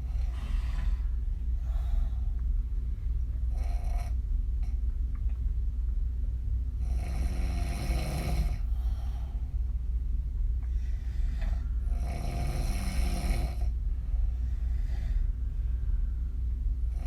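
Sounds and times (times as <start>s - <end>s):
steady low hum: 0.0s - 17.0s
woman snoring: 6.8s - 8.7s, 11.8s - 13.7s.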